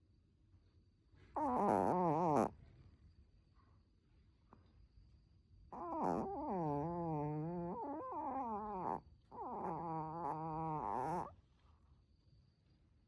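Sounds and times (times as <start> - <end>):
small dog snoring: 1.3 - 2.6, 5.7 - 11.4.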